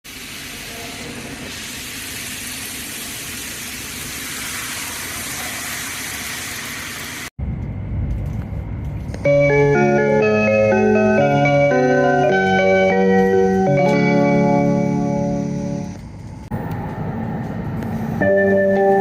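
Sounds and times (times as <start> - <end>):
train rumble: 15.4 - 19.0.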